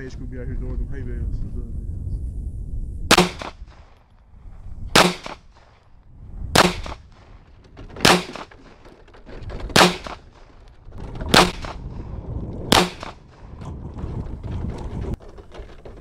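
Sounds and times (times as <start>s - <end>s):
wind rumble on microphone: 0.0s - 8.1s, 9.2s - 16.0s
pistol shots: 3.1s - 3.9s, 5.0s - 5.7s, 6.6s - 7.3s, 8.0s - 8.5s, 9.7s - 10.4s, 11.3s - 11.8s, 12.7s - 13.2s.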